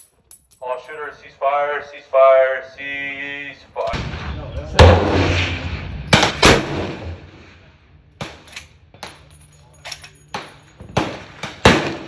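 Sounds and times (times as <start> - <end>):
rifle shots with echo: 3.9 - 8.5, 10.4 - 12.0.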